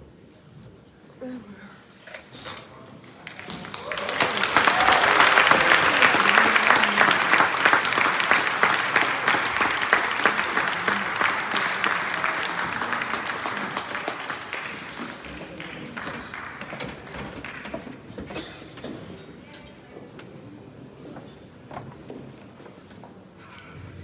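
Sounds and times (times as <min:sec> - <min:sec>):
faint voices: 0:01.2 - 0:19.2
audience applauding: 0:03.0 - 0:18.4.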